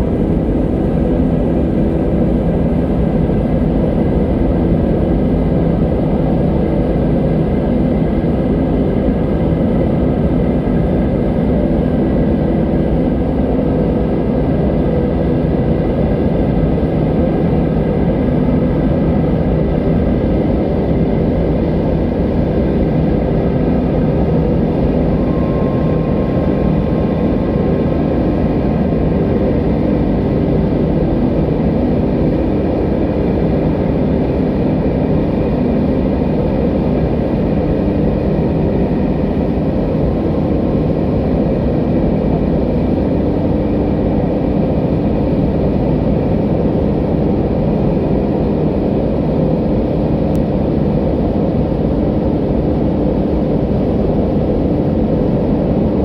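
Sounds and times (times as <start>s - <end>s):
faint held tones: 23.3s - 30.5s.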